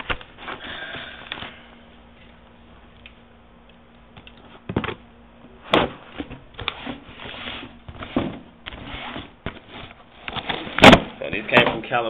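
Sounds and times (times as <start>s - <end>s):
handling knocks: 10.7s - 12.0s.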